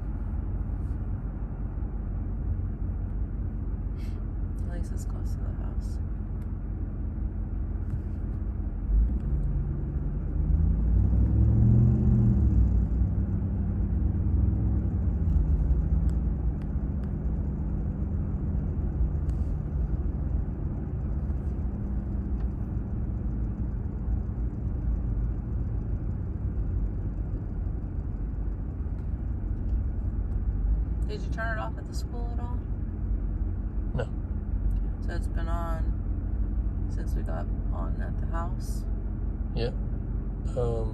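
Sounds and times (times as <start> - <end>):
engine and road rumble: 0.0 - 40.9.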